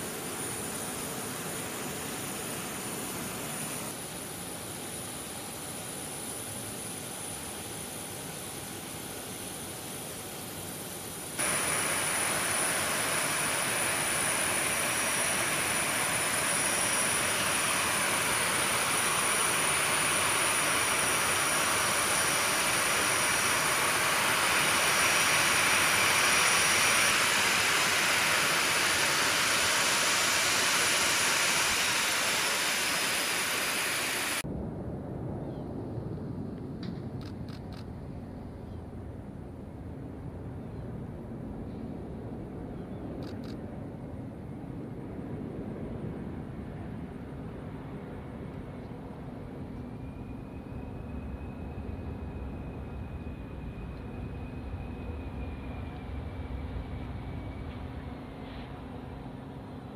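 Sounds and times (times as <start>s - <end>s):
jet engines running: 0.0s - 34.6s.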